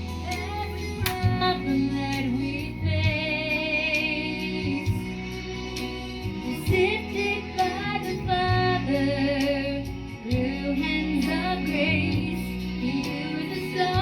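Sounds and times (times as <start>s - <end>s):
woman singing wordless melody: 0.0s - 14.0s
worship ballad accompaniment: 0.0s - 14.0s.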